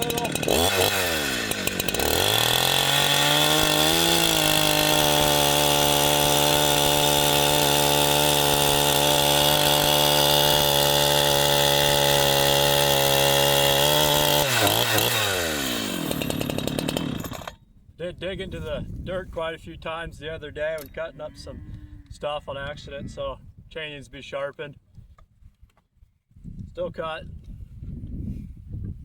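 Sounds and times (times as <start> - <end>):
chainsaw revving: 0.0 - 17.6.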